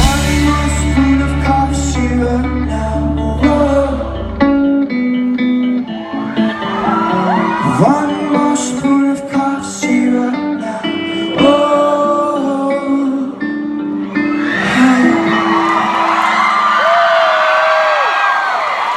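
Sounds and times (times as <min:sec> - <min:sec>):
rock band playing live: 0:00.0 - 0:16.8
crowd whooping and cheering: 0:05.8 - 0:08.6, 0:14.1 - 0:18.9
person singing drawn-out vocals: 0:06.2 - 0:15.9.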